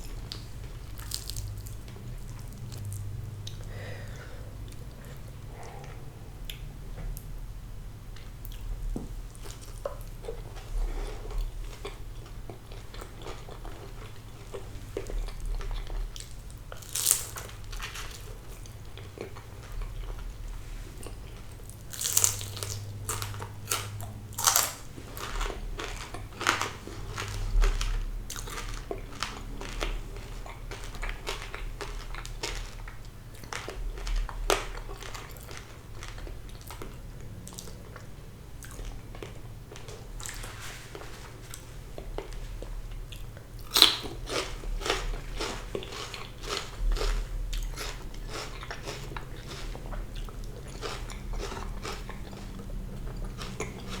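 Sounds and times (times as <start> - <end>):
crunchy chewing: 0.0 - 6.6, 8.2 - 54.0.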